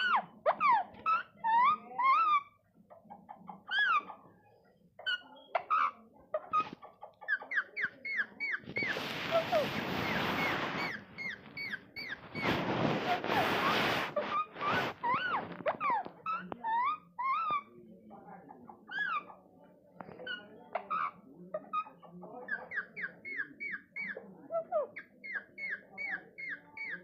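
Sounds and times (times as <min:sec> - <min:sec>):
parrot chirping and squawking: 0:00.0 - 0:02.6, 0:05.0 - 0:17.7.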